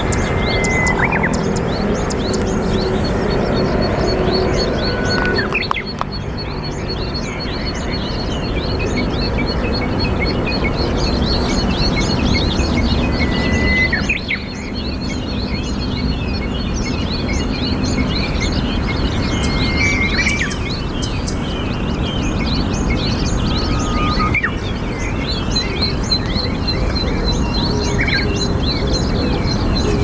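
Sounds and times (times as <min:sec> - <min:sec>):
small birds chirping: 0:00.0 - 0:30.0
steady rushing background noise: 0:00.0 - 0:30.0.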